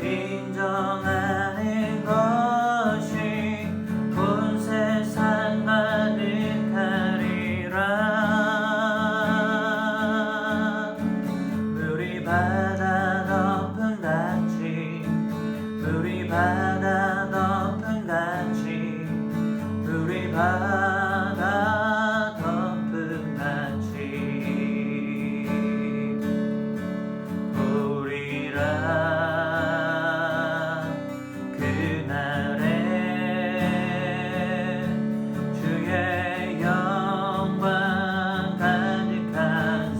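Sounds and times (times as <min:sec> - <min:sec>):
acoustic guitar accompaniment: 0:00.0 - 0:39.9.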